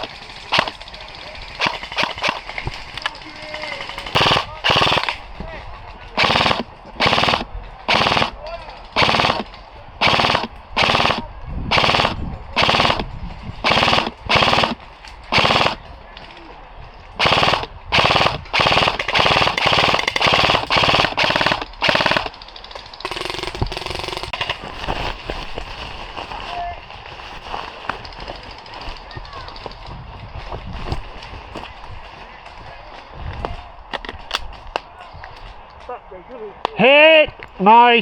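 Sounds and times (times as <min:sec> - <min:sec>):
airsoft gun firing bursts: 0:00.0 - 0:05.4, 0:06.2 - 0:15.9, 0:17.2 - 0:25.4.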